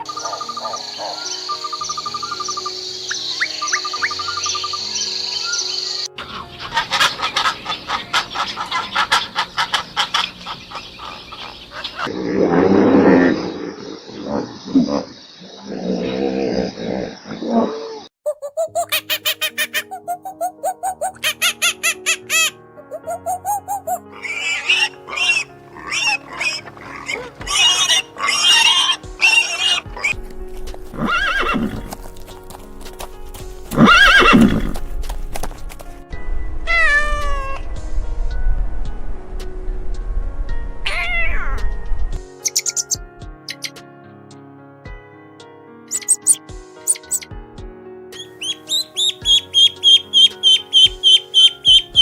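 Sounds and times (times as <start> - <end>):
background music: 0.0 - 12.1, 18.3 - 52.0
chickens clucking: 6.2 - 12.1
low animal sound: 12.0 - 18.1
pig squealing: 15.8 - 30.2, 30.9 - 31.9, 33.7 - 34.7, 45.9 - 47.2, 48.2 - 52.0
high chirping squeaks: 18.3 - 30.2, 42.4 - 43.8, 45.9 - 47.3, 48.2 - 52.0.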